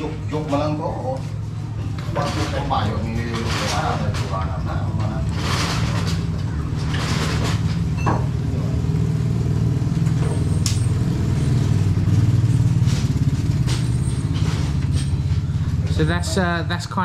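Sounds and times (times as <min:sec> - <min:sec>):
engine running: 0:00.0 - 0:17.0.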